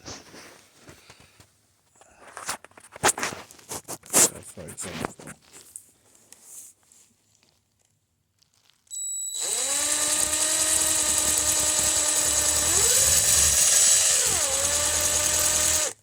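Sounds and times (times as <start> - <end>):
faint high whine: 8.9 - 10.4
power drill motor running: 8.9 - 16.0.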